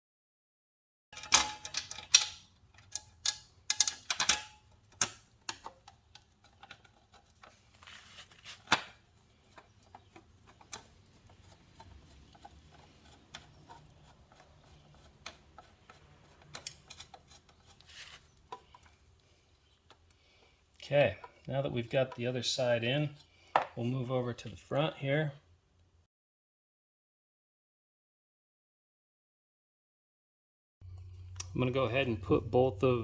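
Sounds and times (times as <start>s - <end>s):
screwdriver clicks and scrapes on metal: 1.2s - 20.2s.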